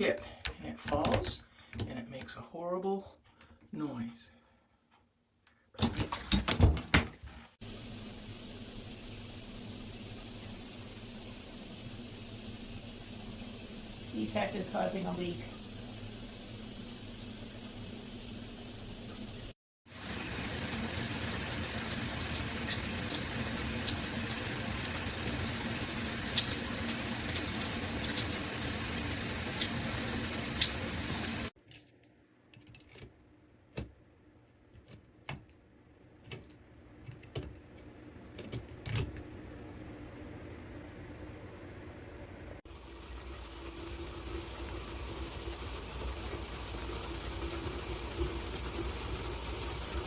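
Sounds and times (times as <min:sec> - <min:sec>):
shower head spraying water: 0:07.6 - 0:31.6, 0:42.7 - 0:50.0.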